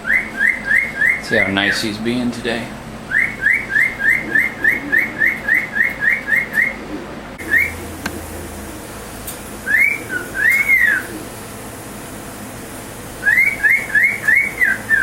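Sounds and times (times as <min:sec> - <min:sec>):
cockatiel whistling: 0:00.0 - 0:01.8, 0:03.1 - 0:06.8, 0:07.4 - 0:08.7, 0:09.6 - 0:11.2, 0:13.2 - 0:15.0.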